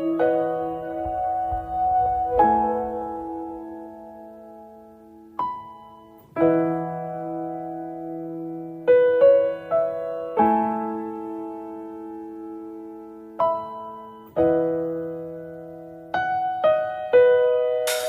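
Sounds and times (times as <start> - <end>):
slow soft piano music: 0.0 - 18.0.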